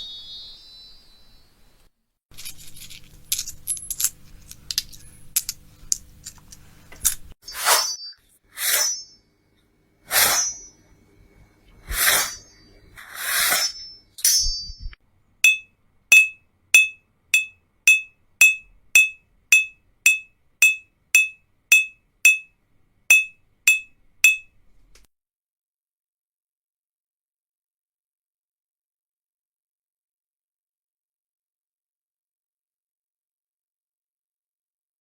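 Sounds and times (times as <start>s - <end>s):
whooshing swells with bright ring: 11.9s - 15.6s
short metallic pings: 13.7s - 22.5s, 23.1s - 24.6s.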